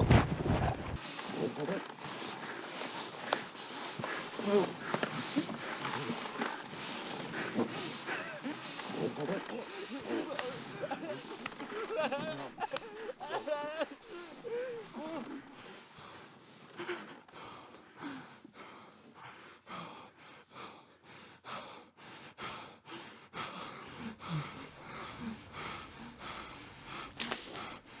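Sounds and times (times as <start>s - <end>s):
person breathing heavily and gasping: 8.0s - 16.0s, 16.7s - 28.0s.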